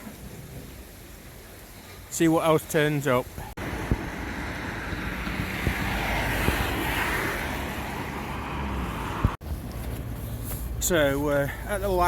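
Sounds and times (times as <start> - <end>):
low steady traffic rumble: 0.0 - 12.0
vehicle passing: 3.6 - 10.2.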